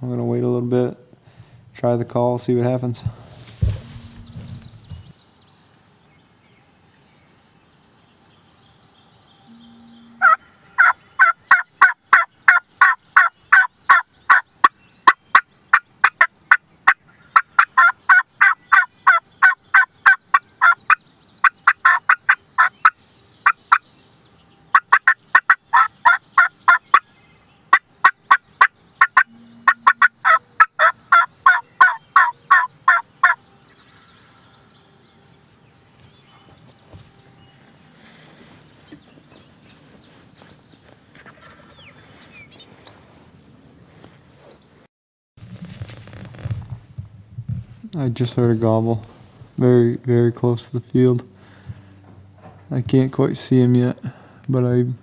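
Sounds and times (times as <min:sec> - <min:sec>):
turkey call yelping: 0:10.1 - 0:14.4, 0:15.1 - 0:23.8, 0:24.7 - 0:27.0, 0:28.0 - 0:33.4.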